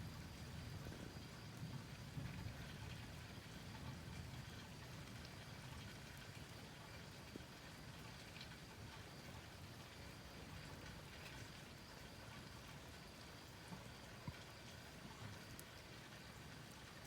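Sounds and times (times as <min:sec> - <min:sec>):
faint outdoor hiss: 0:00.0 - 0:17.0
soft ticks: 0:15.4 - 0:15.7.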